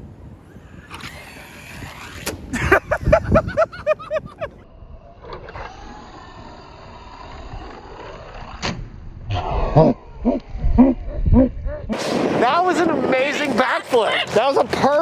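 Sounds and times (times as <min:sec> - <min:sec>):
toy truck electric motor whining: 0:00.4 - 0:03.7, 0:04.7 - 0:08.6.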